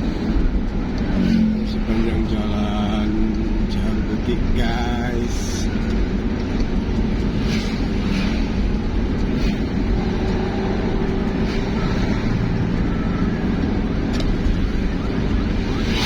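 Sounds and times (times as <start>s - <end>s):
tyres on road: 0.0s - 16.0s
vehicle engine rumble: 0.0s - 16.0s.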